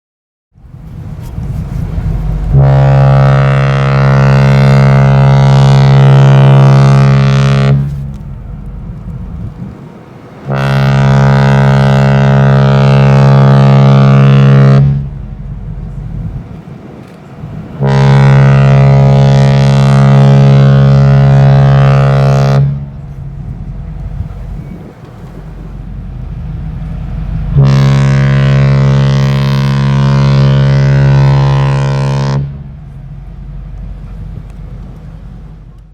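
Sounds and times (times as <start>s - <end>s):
low rumble: 0.6s - 35.9s
ship horn blast: 1.4s - 8.6s, 10.2s - 34.2s.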